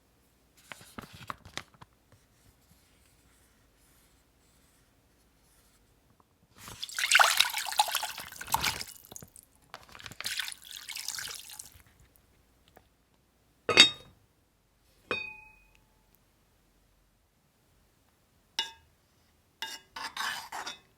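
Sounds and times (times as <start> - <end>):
liquid pouring and splashing: 6.6 - 12.0
tableware clinking: 13.7 - 14.1, 15.1 - 15.6.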